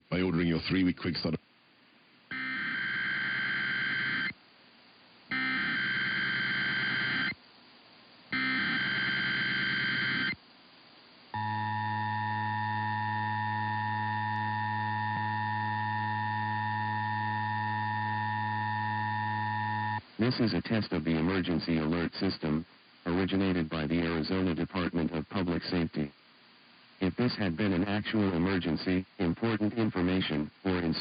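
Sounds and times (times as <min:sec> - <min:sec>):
two-tone attention signal: 0:11.4 - 0:20.0.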